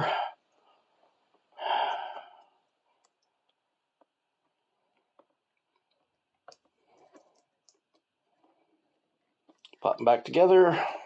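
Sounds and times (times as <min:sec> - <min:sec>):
faint clicks of connectors: 0:00.5 - 0:08.6.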